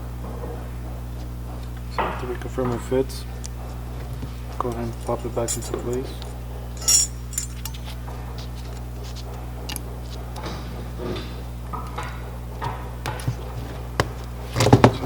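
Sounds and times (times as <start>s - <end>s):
steady low hum: 0.0s - 15.0s
metal parts clinking: 4.7s - 8.0s.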